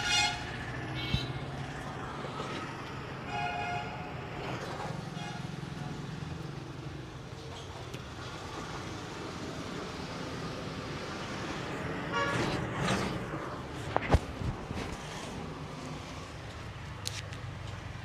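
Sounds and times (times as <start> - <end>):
vehicle horn: 0.0 - 1.6, 3.2 - 4.1, 5.1 - 5.6, 12.1 - 12.7
passing vehicles: 0.0 - 18.0.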